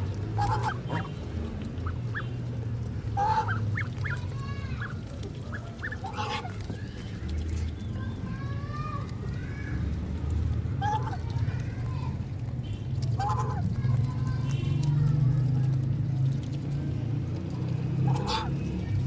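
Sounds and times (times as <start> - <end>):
ducklings peeping: 0.0 - 9.8, 10.7 - 11.4, 12.9 - 16.8, 17.4 - 19.0
ducks quacking: 0.3 - 7.4, 10.8 - 11.4, 13.0 - 14.1, 17.9 - 19.0.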